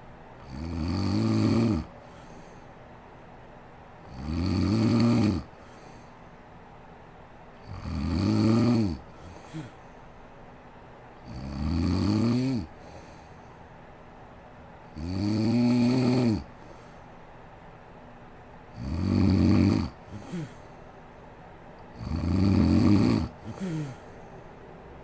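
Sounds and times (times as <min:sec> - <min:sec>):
woman snoring: 0:00.4 - 0:01.9, 0:04.1 - 0:05.5, 0:07.7 - 0:09.8, 0:11.3 - 0:13.0, 0:15.0 - 0:16.5, 0:18.8 - 0:20.6, 0:22.0 - 0:24.2.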